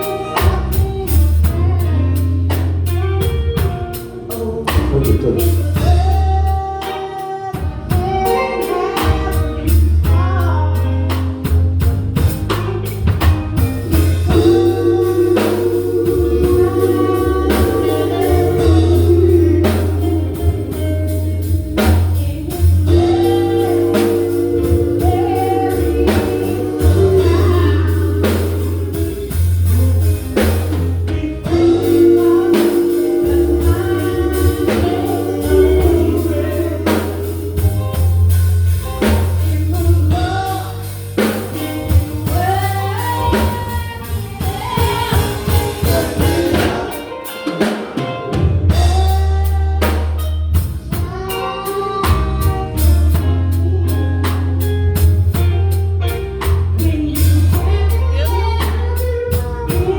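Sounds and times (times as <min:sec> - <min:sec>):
bass: 0:00.0 - 0:59.9
drum kit: 0:00.0 - 0:59.9
electric guitar: 0:00.0 - 0:59.9
gospel group singing: 0:00.0 - 0:59.9
keyboard playing: 0:00.0 - 0:59.9.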